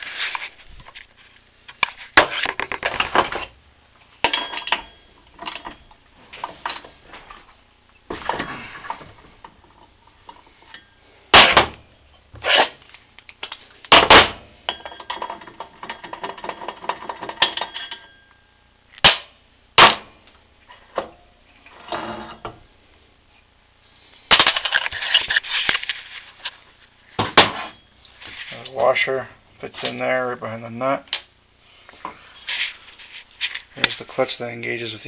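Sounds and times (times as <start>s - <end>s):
tools rattling and clattering: 4.2s - 7.5s.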